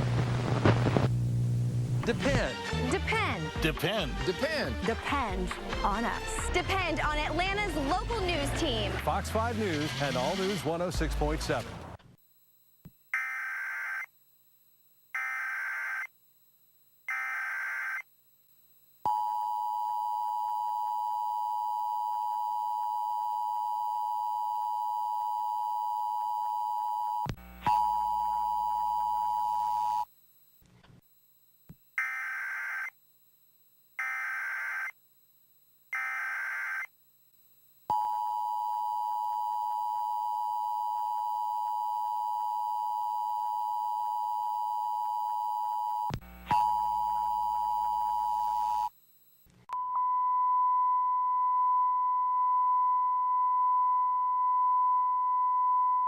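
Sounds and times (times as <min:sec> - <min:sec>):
crackling: 0:00.0 - 0:02.5.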